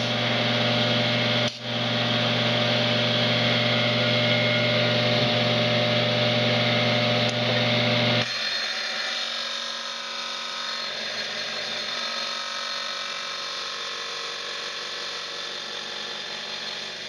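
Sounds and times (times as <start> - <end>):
tile cutter motor hum: 0.0 - 17.0
hiss of cutting tile: 8.2 - 17.0.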